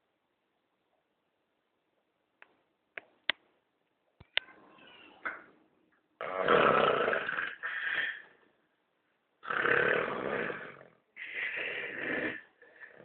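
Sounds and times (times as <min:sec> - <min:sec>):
man snoring loudly: 0:06.2 - 0:08.2, 0:09.4 - 0:13.0.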